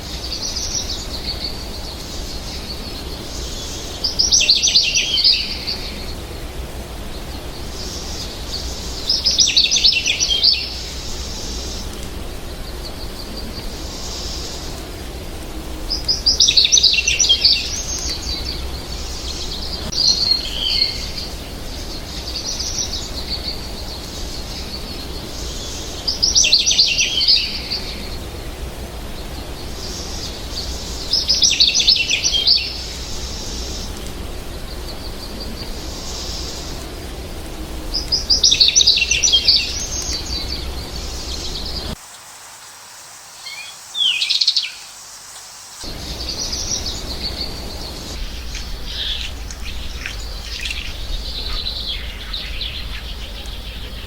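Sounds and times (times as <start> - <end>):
bird warbling song: 0.0 - 14.8, 15.8 - 36.9, 37.9 - 42.0, 43.4 - 44.9, 45.9 - 54.0
background hiss: 0.0 - 54.0
low hum: 45.9 - 54.0.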